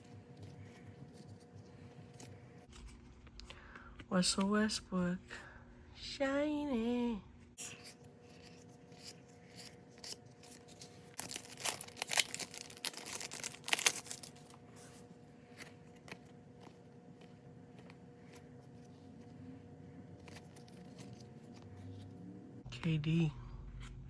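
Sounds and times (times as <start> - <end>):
plastic wrapping crinkling: 8.4 - 14.6.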